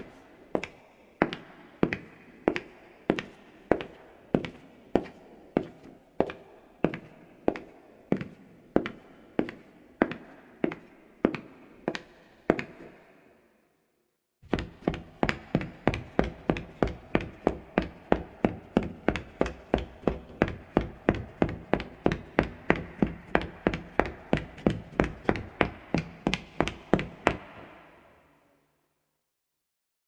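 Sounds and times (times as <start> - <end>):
footsteps on wooden floor: 14.4 - 27.9.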